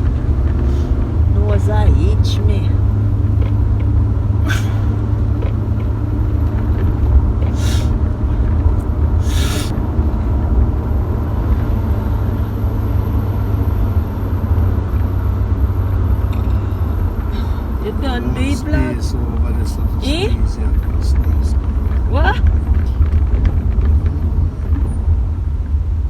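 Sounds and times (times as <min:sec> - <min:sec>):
car driving rumble: 0:00.0 - 0:26.0
short hissing bursts: 0:09.2 - 0:09.7.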